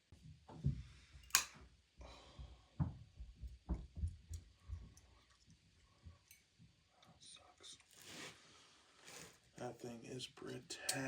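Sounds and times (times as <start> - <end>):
hand tool clicks and taps: 1.2 - 1.6.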